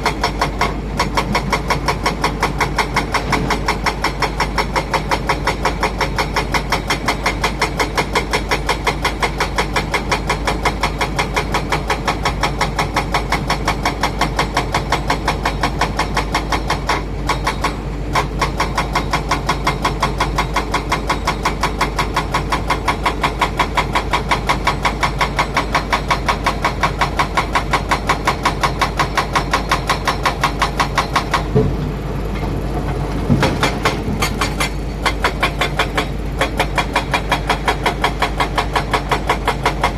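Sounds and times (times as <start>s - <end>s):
diesel engine running: 30.4s - 39.9s.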